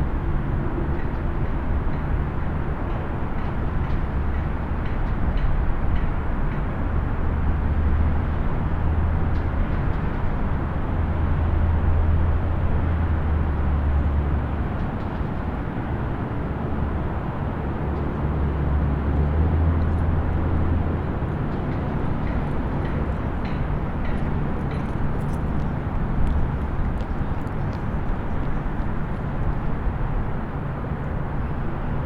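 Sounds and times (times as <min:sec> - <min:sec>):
distant highway traffic: 0:11.7 - 0:32.0.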